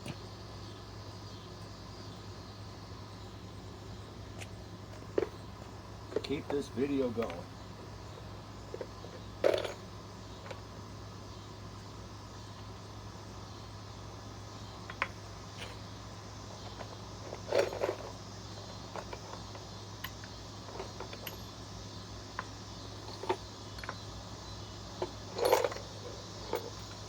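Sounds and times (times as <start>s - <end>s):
metal hardware clattering: 25.0s - 27.0s
metal hardware clinking: 25.0s - 27.0s.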